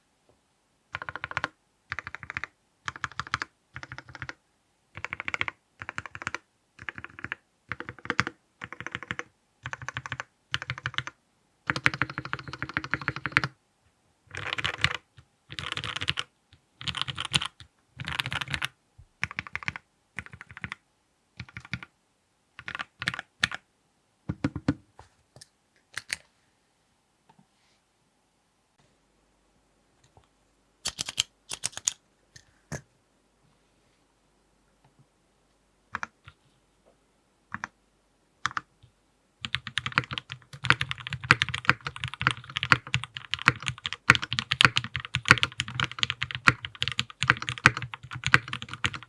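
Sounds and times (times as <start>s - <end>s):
mechanical keyboard typing: 0.9s - 4.4s, 5.0s - 13.6s, 14.3s - 20.8s, 21.4s - 21.9s, 22.6s - 23.6s, 25.9s - 26.2s, 30.8s - 32.0s, 35.9s - 36.3s, 37.5s - 37.7s, 38.4s - 38.7s, 39.4s - 49.0s.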